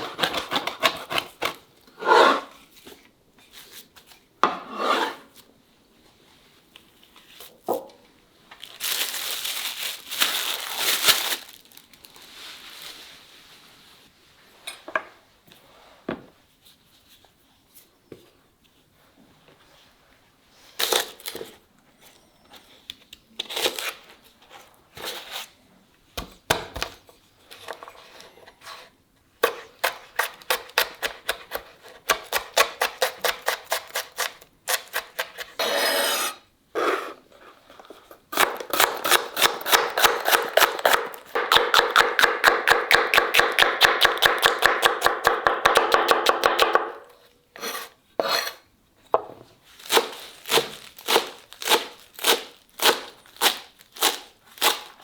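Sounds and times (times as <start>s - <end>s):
knife chopping on cutting board: 38.4s - 47.0s.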